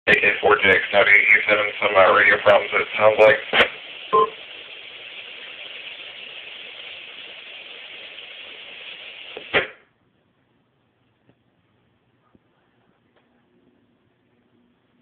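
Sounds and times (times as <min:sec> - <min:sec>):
radio static hiss: 0:00.1 - 0:09.9.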